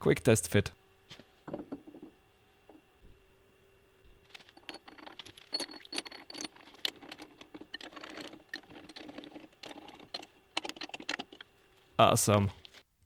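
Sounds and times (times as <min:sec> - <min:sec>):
metal parts clinking and scraping: 0:04.3 - 0:11.5.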